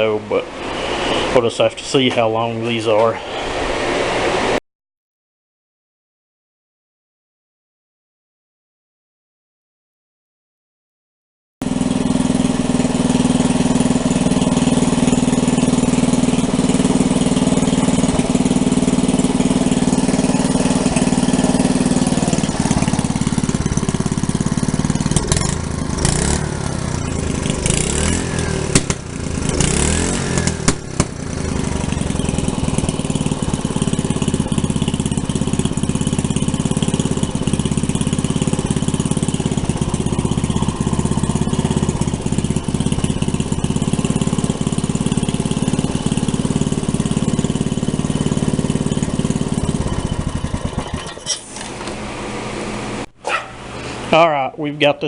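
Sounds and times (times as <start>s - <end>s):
small engine running: 11.6s - 54.2s
sharp engine knocks: 27.4s - 40.6s.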